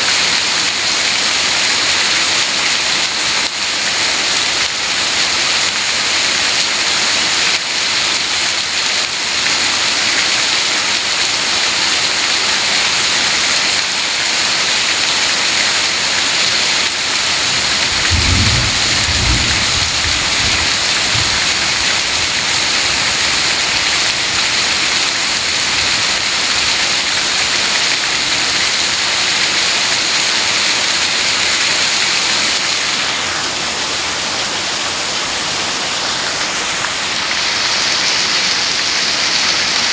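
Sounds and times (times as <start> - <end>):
heavy rain pouring: 0.0 - 39.9
low rumble of thunder: 17.5 - 22.9.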